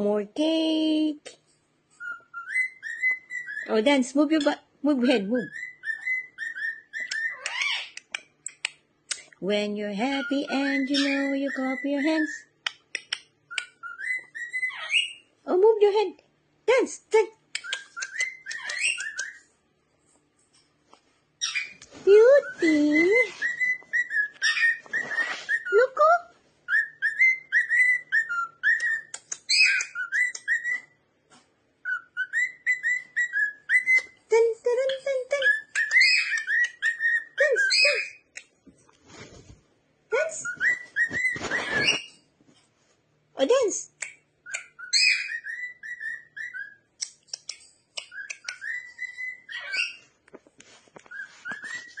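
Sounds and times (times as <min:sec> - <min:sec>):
cockatiel whistling: 0:02.0 - 0:03.7, 0:05.4 - 0:07.5, 0:13.5 - 0:15.2, 0:22.4 - 0:25.8, 0:26.7 - 0:31.0, 0:31.8 - 0:34.2, 0:35.4 - 0:38.2, 0:40.4 - 0:42.2, 0:44.4 - 0:46.9, 0:48.0 - 0:50.0, 0:51.0 - 0:52.0
cockatiel clicks: 0:07.0 - 0:09.4, 0:12.6 - 0:13.7, 0:17.5 - 0:19.4, 0:28.7 - 0:30.7, 0:35.7 - 0:36.9, 0:47.0 - 0:48.8.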